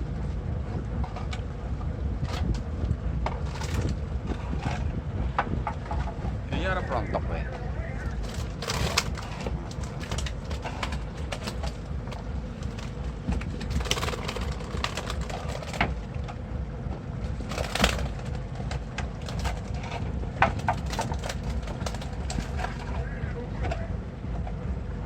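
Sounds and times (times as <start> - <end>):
boat engine rumbling: 0.0 - 25.0
knocks and clicks: 8.0 - 23.0.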